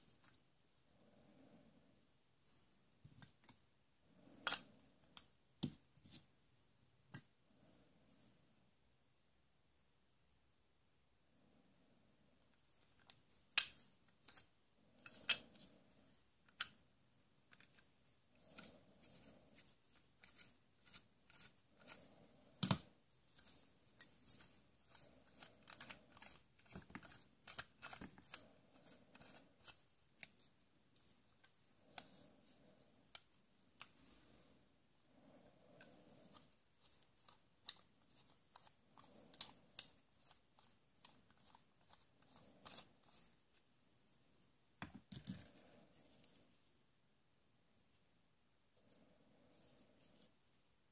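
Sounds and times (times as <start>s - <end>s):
soft rustling: 45.1s - 46.8s, 48.7s - 50.9s.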